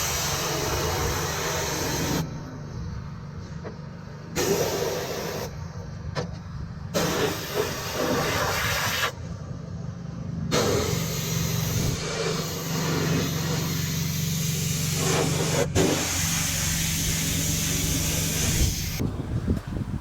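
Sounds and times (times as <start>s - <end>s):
pressure washer spraying: 0.0s - 2.3s, 4.4s - 5.6s, 7.0s - 9.2s, 10.5s - 19.0s.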